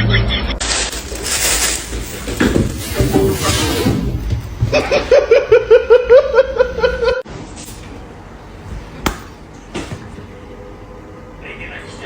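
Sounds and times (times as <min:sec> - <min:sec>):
person laughing: 0:04.7 - 0:07.2.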